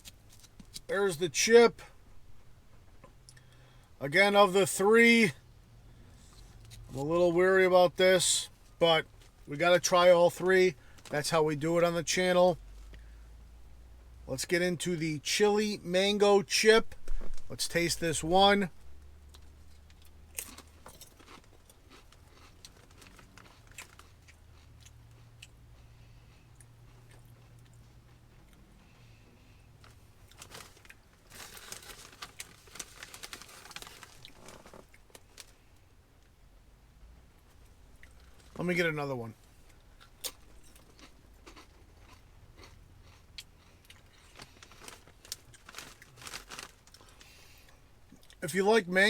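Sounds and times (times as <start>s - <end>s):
potato chip crunching: 19.3s - 25.5s, 30.2s - 35.5s, 39.7s - 47.4s.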